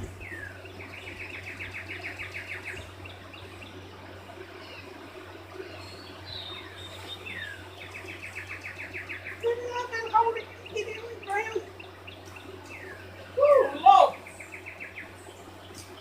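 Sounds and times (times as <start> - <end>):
low hum: 0.0 - 16.0
songbird singing: 0.0 - 16.0.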